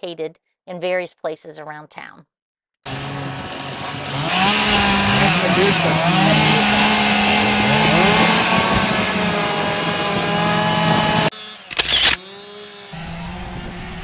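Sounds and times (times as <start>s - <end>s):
chainsaws revving: 2.9s - 13.0s.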